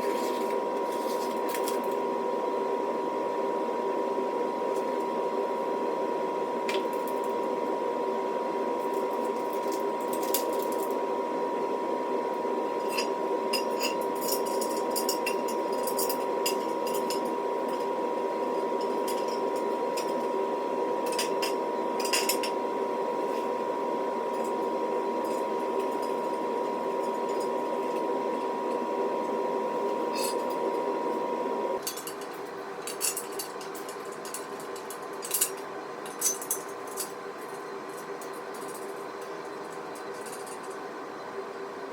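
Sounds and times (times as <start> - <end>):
steady hum with high tone: 0.0 - 41.9.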